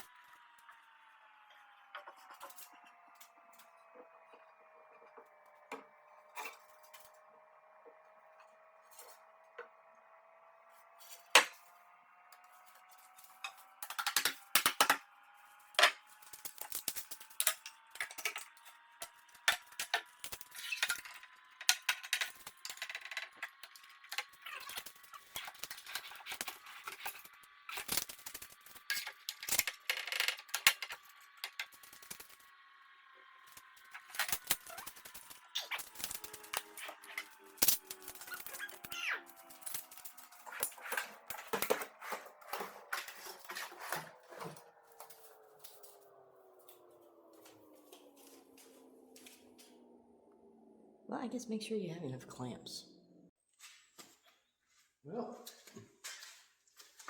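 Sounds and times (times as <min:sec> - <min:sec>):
boards and clamps clattering: 0:11.0 - 0:11.7, 0:13.0 - 0:32.4, 0:33.9 - 0:45.5.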